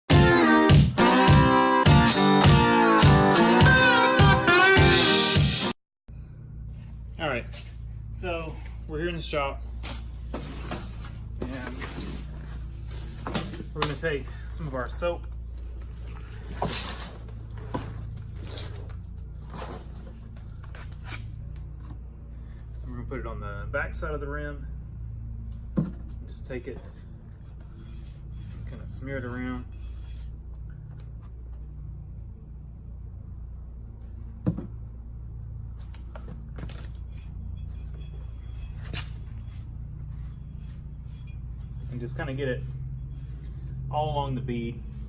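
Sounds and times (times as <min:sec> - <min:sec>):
steady low hum: 0:06.1 - 0:45.0.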